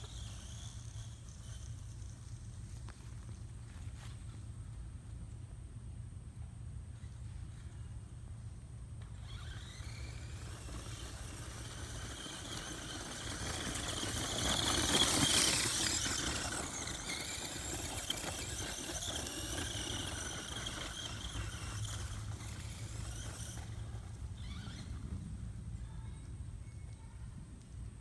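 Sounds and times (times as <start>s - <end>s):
electric motor whining: 9.0s - 25.2s.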